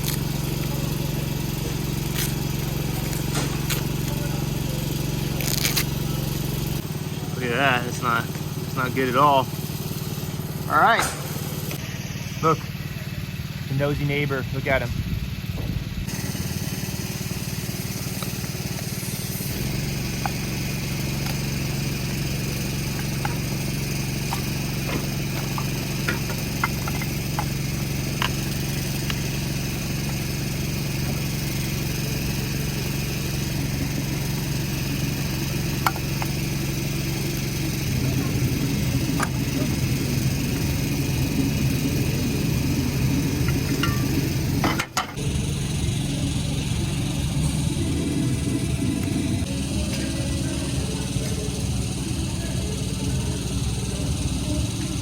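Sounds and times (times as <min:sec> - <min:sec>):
engine idling: 0:00.0 - 0:55.0
hand tools clicking and tapping: 0:24.2 - 0:29.2.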